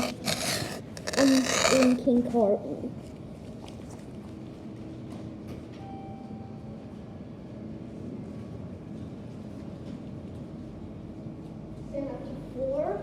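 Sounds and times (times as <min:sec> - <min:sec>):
elevator machinery hum and rumble: 0:05.0 - 0:12.9.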